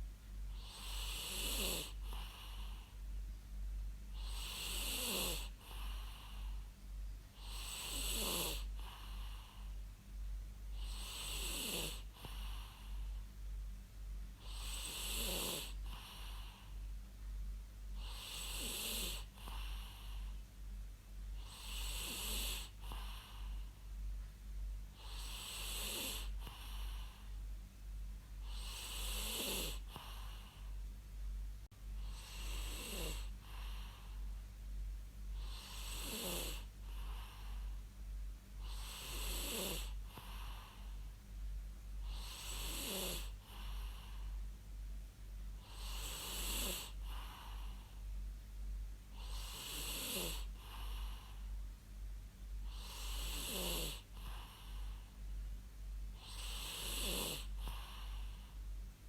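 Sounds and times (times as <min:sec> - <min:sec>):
person snoring: 0:00.6 - 0:02.8, 0:04.2 - 0:06.5, 0:07.4 - 0:09.6, 0:10.8 - 0:13.0, 0:14.4 - 0:16.6, 0:18.0 - 0:20.2, 0:21.4 - 0:23.6, 0:25.0 - 0:27.2, 0:28.4 - 0:30.6, 0:32.0 - 0:34.2, 0:35.4 - 0:37.6, 0:38.6 - 0:40.9, 0:42.0 - 0:44.3, 0:45.6 - 0:47.8, 0:49.2 - 0:51.4, 0:52.7 - 0:55.0, 0:56.2 - 0:58.4.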